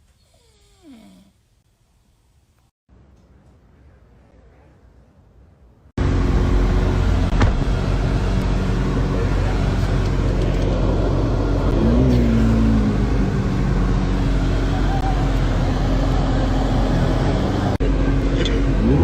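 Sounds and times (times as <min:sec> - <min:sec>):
vehicle drone inside cabin: 0:06.0 - 0:19.0.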